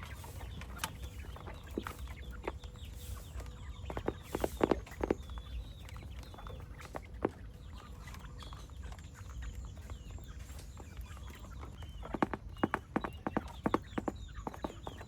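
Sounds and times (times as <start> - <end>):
chickens clucking quietly: 0.0 - 15.0.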